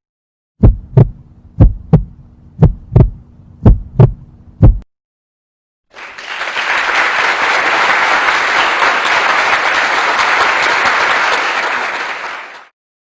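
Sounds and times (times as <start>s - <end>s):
crowd clapping: 5.9s - 12.8s.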